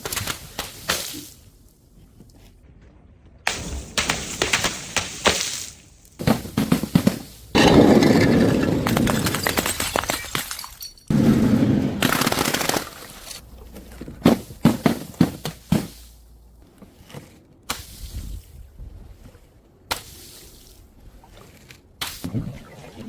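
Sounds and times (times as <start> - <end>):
glass bottles breaking: 7.6 - 11.1
glass clinks and knocks: 8.8 - 11.1.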